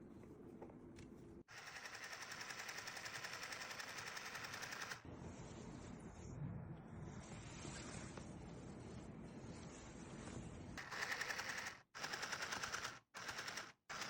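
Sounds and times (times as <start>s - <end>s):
sewing machine rattling: 1.5s - 5.0s, 10.8s - 14.0s.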